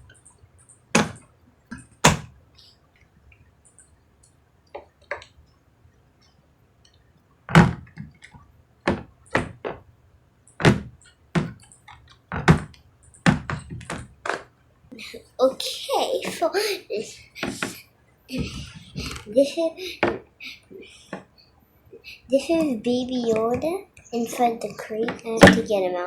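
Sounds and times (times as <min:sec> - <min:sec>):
plastic toy pieces knocking: 0:01.0 - 0:02.3.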